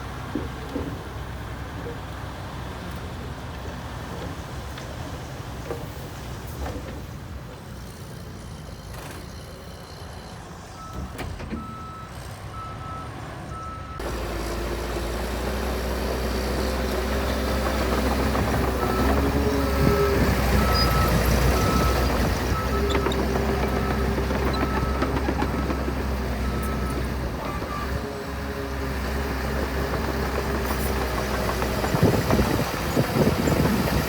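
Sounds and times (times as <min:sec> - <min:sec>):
diesel engine rumbling: 0:00.0 - 0:34.0
reversing alarm beeping: 0:18.8 - 0:23.2.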